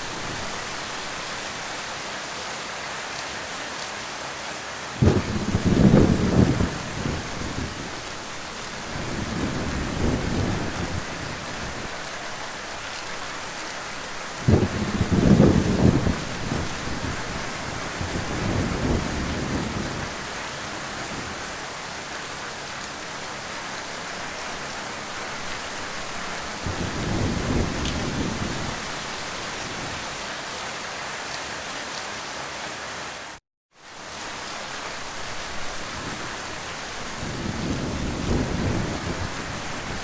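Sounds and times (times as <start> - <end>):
heavy rain falling: 0.0 - 40.0
distant thunder rumbling: 5.0 - 12.0, 14.2 - 21.4, 25.0 - 30.1, 35.8 - 40.0.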